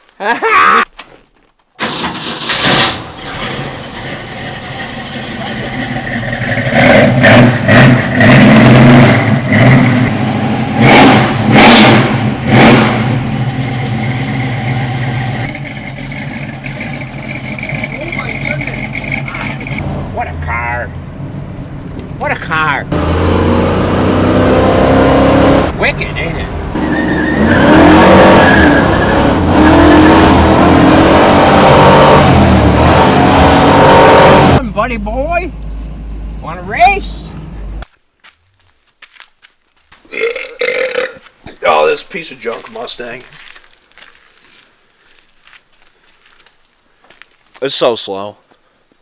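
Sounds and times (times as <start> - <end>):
car engine revving and idling: 1.9 - 37.9.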